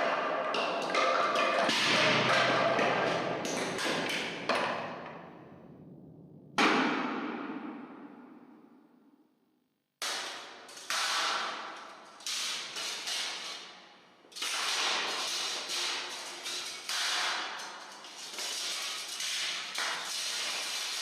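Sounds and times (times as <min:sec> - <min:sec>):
sharp cracking bangs with echo: 0:01.7 - 0:05.8.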